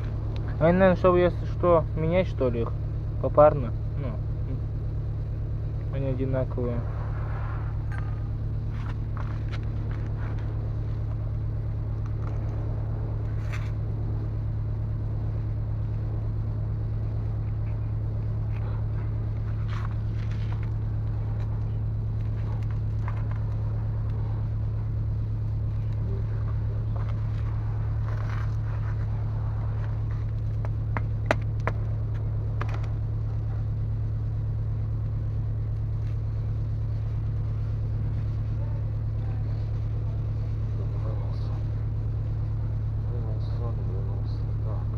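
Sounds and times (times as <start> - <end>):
engine droning with rapid pulsing: 0.0 - 44.9.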